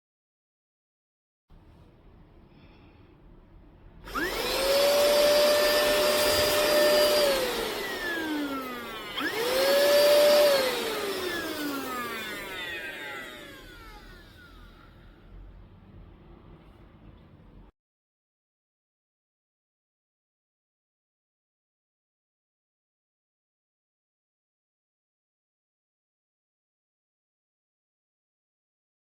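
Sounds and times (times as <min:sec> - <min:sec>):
handheld vacuum cleaner motor whining: 0:04.1 - 0:15.0.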